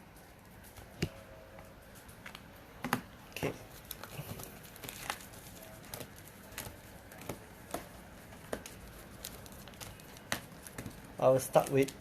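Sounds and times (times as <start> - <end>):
foil card packs tapping on table: 5.8 - 12.0.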